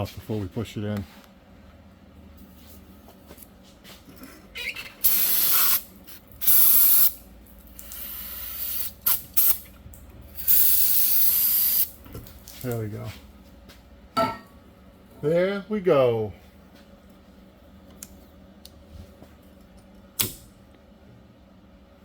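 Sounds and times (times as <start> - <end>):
aerosol spray hissing: 5.0 - 5.8, 7.9 - 9.6, 10.4 - 11.9.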